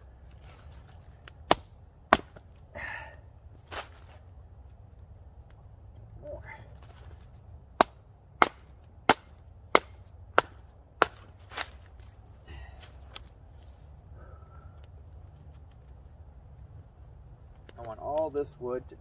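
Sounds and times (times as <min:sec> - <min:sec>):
blade splitting wet wood: 0:01.2 - 0:02.4, 0:07.8 - 0:11.8.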